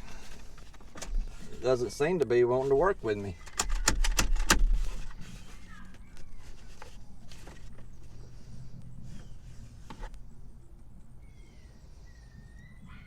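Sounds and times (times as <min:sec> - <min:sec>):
seatbelt retractor rumble and clicks: 0:03.4 - 0:05.4
faint insect or bird chirps: 0:07.9 - 0:13.0.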